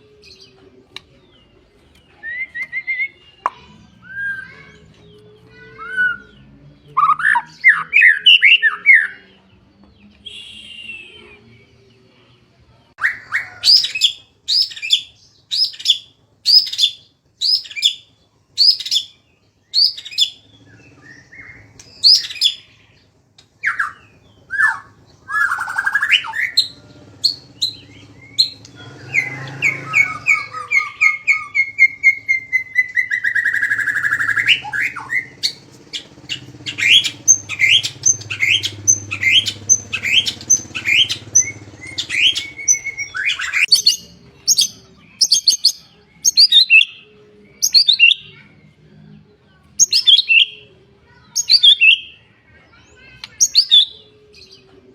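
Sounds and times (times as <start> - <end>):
songbird calling in sharp notes: 2.0 - 11.6, 13.0 - 48.4.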